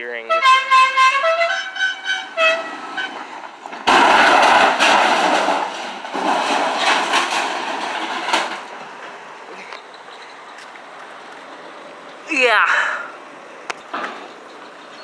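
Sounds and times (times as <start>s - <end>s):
short horn toots: 0.2s - 3.3s
truck crashing into metal: 0.6s - 9.1s
metal scraping and clattering: 0.7s - 9.1s.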